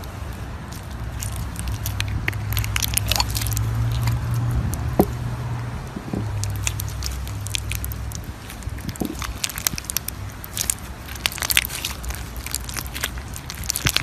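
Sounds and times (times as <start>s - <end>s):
slime crackling and squishing: 0.0s - 14.0s.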